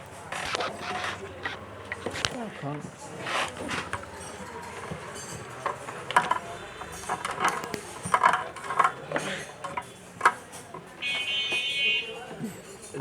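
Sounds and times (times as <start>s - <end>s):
tools clicking and clinking: 3.4s - 11.3s.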